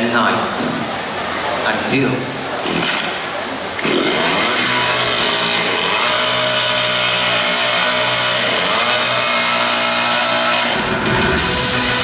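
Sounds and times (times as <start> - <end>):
chainsaw over loudspeaker: 3.8 - 12.0
music: 7.6 - 12.0.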